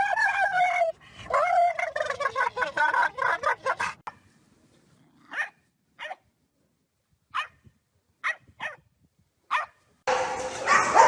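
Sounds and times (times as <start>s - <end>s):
dog barking: 5.3s - 6.2s, 7.3s - 7.6s, 8.2s - 8.8s, 9.5s - 9.8s, 10.6s - 11.0s.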